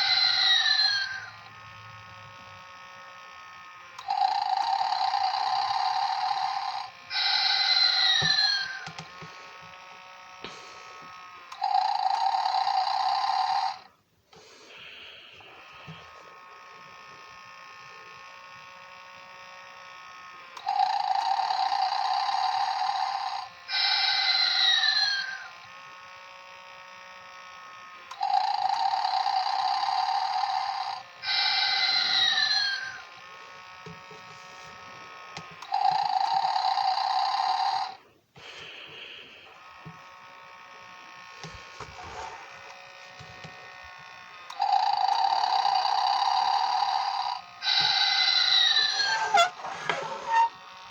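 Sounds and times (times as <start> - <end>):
loud buzzy snores: 48.8 - 50.9.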